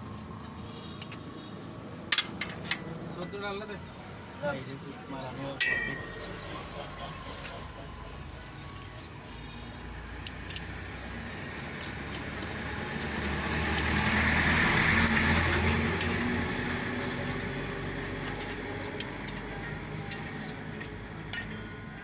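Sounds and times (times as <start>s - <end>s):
vehicle passing by: 9.8s - 20.8s
light metallic clicks: 18.2s - 21.6s.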